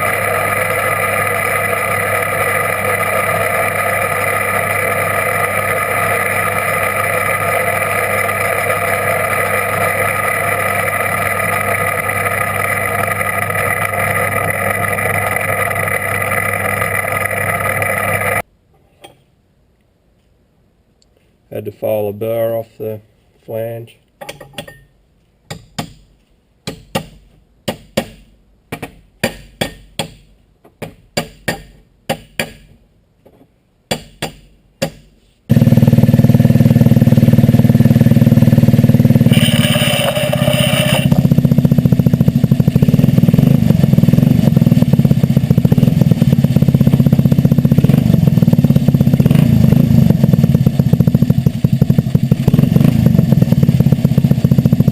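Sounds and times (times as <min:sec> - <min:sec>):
go-kart engine running: 0:00.0 - 0:18.4, 0:35.5 - 0:54.9.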